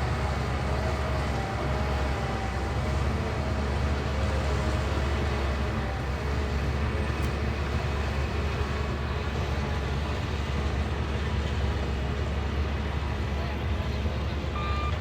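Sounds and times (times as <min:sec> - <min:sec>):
diesel engine droning under load: 0:00.0 - 0:15.0.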